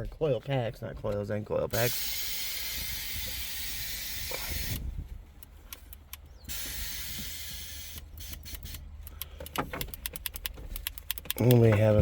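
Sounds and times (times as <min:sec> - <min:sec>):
steady hissing: 0:01.8 - 0:04.8, 0:06.5 - 0:08.8.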